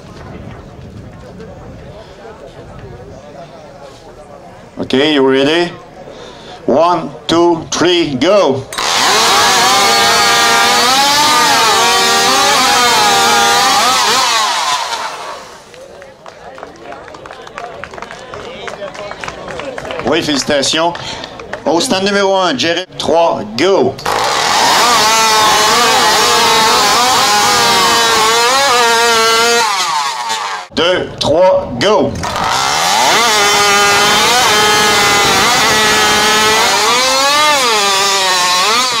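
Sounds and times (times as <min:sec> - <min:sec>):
chainsaw cutting wood: 0:08.7 - 0:15.8, 0:24.0 - 0:30.7, 0:32.2 - 0:39.0.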